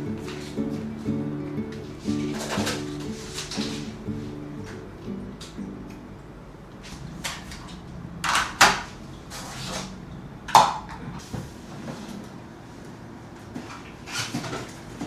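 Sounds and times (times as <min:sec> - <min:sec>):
cupboard doors and dishware clattering: 0:00.0 - 0:05.6.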